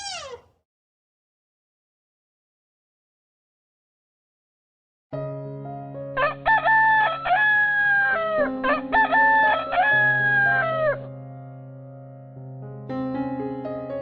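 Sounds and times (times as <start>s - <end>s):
rooster crowing: 0.0s - 0.4s, 6.2s - 11.0s
soft background music: 5.3s - 11.4s.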